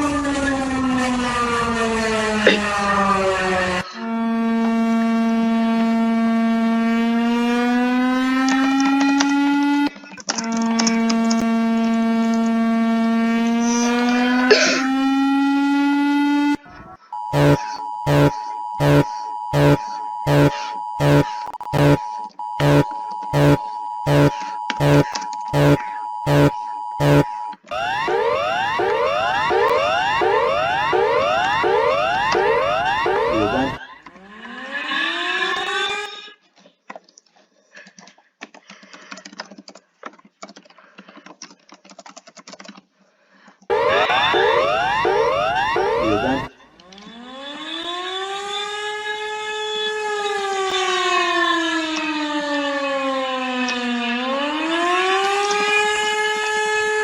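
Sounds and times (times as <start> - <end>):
long buzzing alarm tone: 0.0 - 16.6, 17.2 - 36.1, 43.7 - 57.0
short buzzing alarm blasts: 0.0 - 16.6, 17.2 - 36.1, 43.7 - 57.0
steady high tone: 17.3 - 22.0, 22.6 - 25.0, 25.6 - 36.0, 43.7 - 48.0
keyboard typing: 17.4 - 27.8, 36.9 - 47.0.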